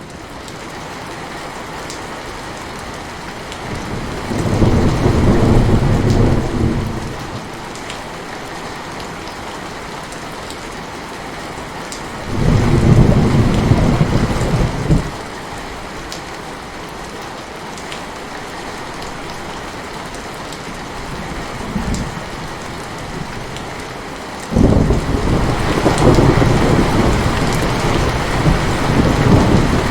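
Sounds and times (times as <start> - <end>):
heavy rain falling: 0.0 - 29.9
thunder rolling: 3.7 - 7.5, 12.2 - 15.2, 24.5 - 29.9.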